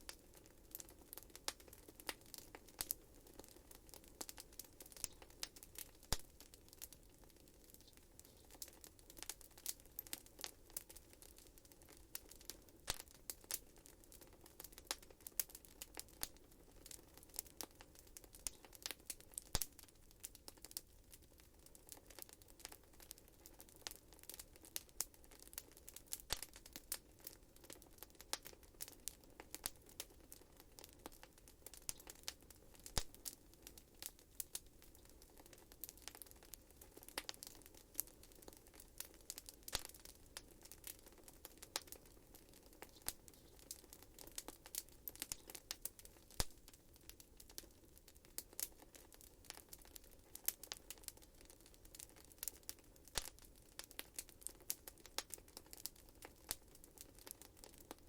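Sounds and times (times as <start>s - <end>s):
wood fire crackling and popping: 0.0s - 58.0s
low hiss of flames: 35.9s - 48.8s.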